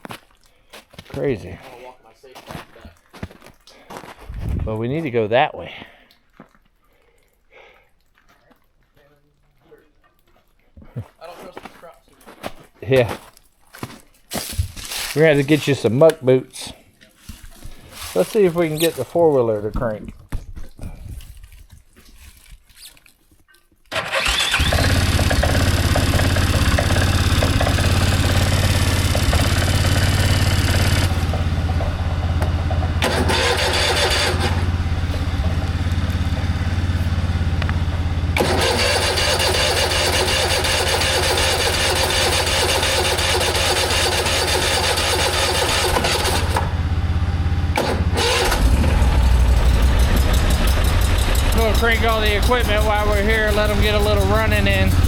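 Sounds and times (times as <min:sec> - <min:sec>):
atv engine starting and running: 0:23.9 - 0:55.0.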